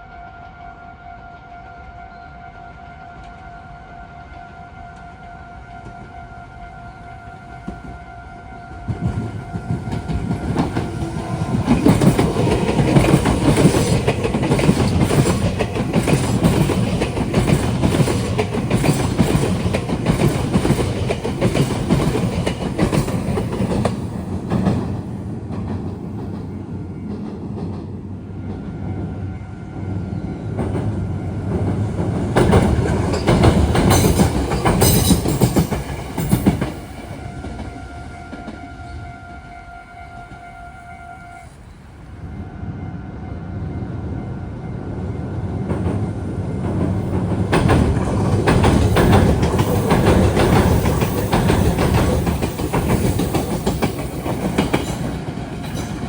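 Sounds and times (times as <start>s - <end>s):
train wheels clacking over rails: 8.9s - 28.9s, 30.6s - 38.6s, 45.5s - 56.0s
level-crossing warning bell: 30.6s - 41.5s, 47.1s - 56.0s.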